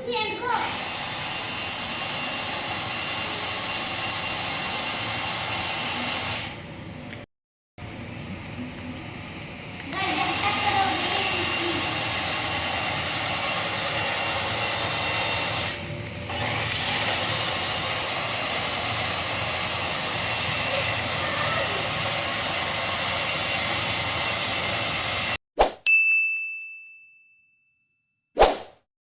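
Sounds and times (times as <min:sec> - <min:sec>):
toy tractor motor whirring: 0:10.0 - 0:25.4.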